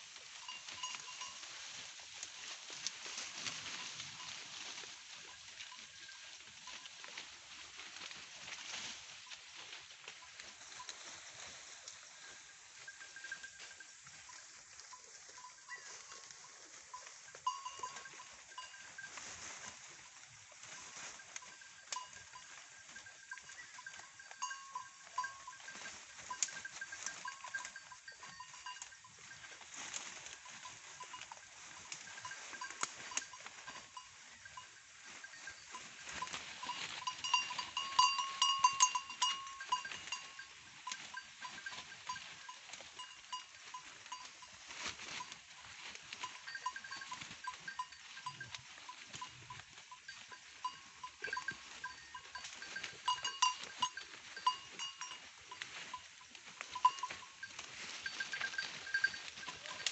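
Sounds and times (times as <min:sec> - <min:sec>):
clicks and rustles in undergrowth: 0:00.0 - 0:59.9
thin high ringing tones: 0:12.0 - 0:19.7, 0:20.6 - 0:59.9.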